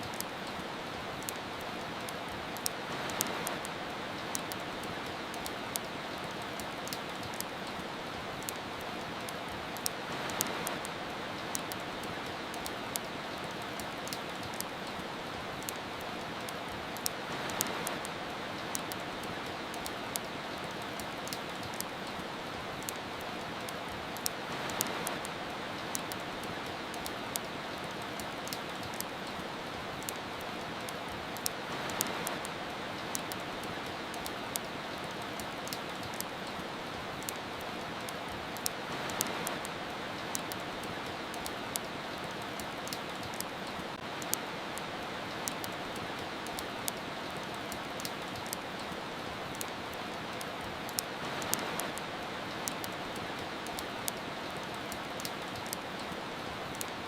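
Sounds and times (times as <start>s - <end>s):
rain hiss: 0.0s - 57.0s
wood fire crackling and popping: 0.0s - 57.0s.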